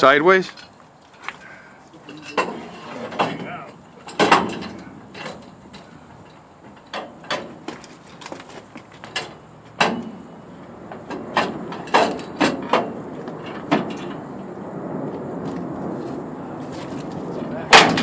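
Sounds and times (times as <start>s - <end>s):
heavy steel pieces clanking: 2.0s - 14.3s, 17.7s - 18.0s.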